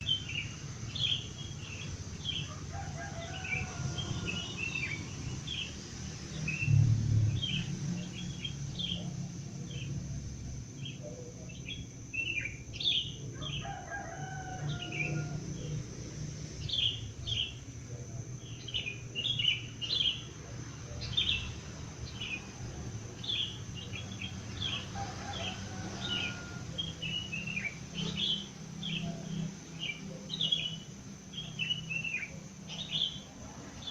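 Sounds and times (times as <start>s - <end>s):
low steady hum: 0.0s - 33.9s
small birds chirping: 0.0s - 33.9s
rooster crowing: 2.4s - 5.3s, 13.3s - 15.9s, 24.4s - 28.4s.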